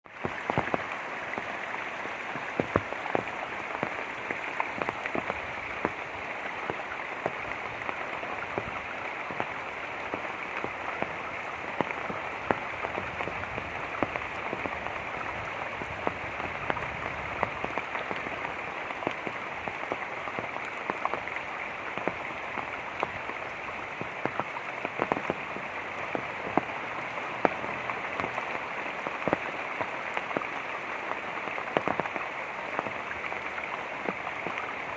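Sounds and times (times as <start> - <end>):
light rain pattering: 0.0 - 34.9
running water hiss: 0.1 - 34.9.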